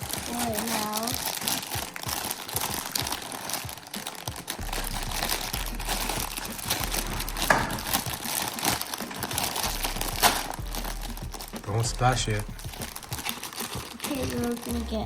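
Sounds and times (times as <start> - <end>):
plastic pieces clicking and rattling: 0.0 - 4.6, 13.0 - 14.9
plastic bag crinkling: 0.0 - 15.0.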